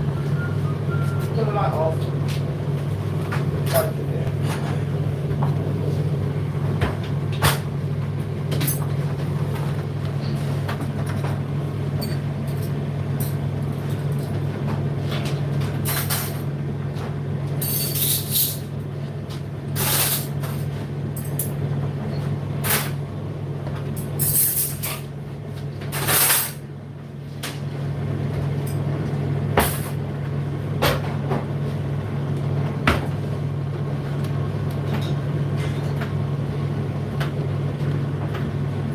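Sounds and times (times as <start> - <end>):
tumble dryer humming: 0.0 - 15.8.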